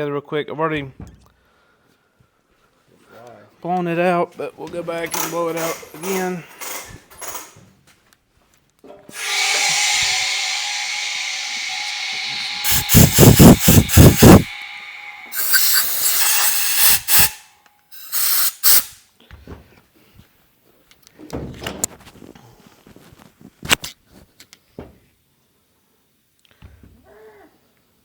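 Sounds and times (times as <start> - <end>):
air blow gun blasts and hisses: 9.1 - 19.0.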